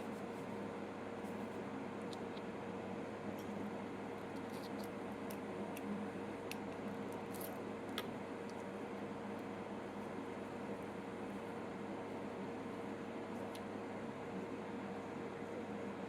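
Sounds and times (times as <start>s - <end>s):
steady background hum: 0.0s - 16.0s
small clicks from handling parts: 2.1s - 2.5s.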